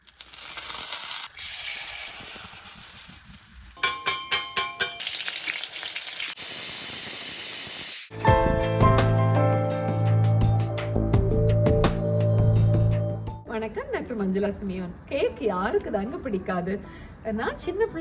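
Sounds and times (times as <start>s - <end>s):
metallic taps with ringing tones: 3.8s - 5.0s.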